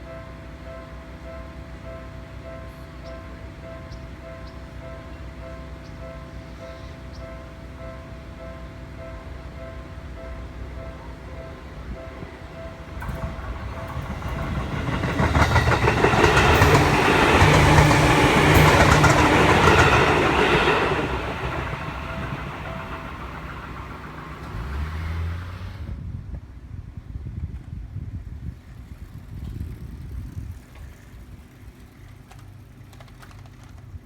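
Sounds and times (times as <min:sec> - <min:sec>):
level crossing warning bell: 0:00.0 - 0:25.0
train passing: 0:00.0 - 0:26.0
wheels clacking over rail joints: 0:12.2 - 0:25.9, 0:30.6 - 0:34.0.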